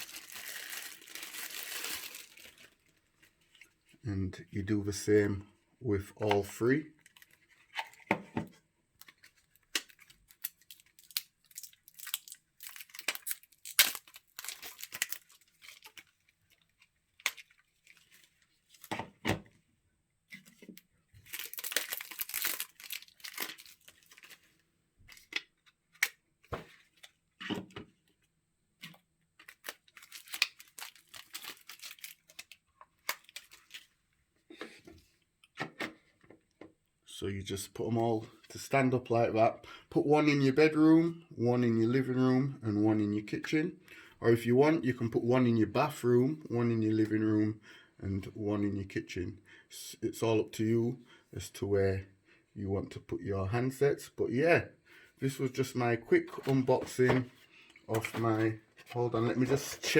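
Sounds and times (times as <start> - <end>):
plastic packaging crinkling and tearing: 0.0 - 3.0, 9.0 - 18.9, 21.2 - 25.4, 29.4 - 33.9.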